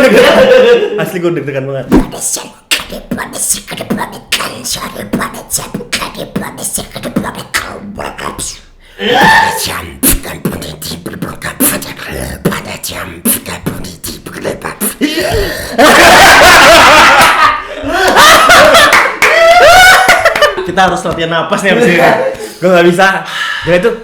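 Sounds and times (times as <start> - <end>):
pitched vocal effect: 1.9 - 18.8
beatboxing: 1.9 - 21.2.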